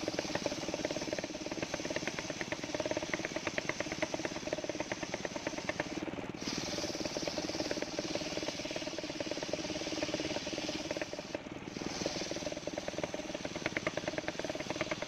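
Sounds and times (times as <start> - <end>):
sawmill engine knocking: 0.0 - 15.0.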